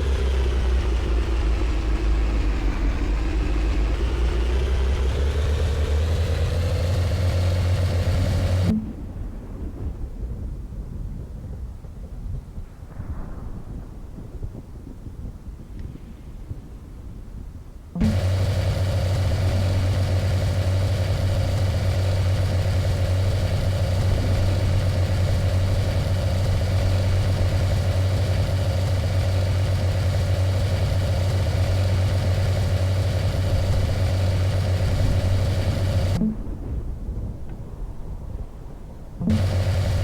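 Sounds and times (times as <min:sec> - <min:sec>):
vehicle engine idling: 0:00.0 - 0:08.8, 0:18.0 - 0:36.7, 0:39.2 - 0:40.0.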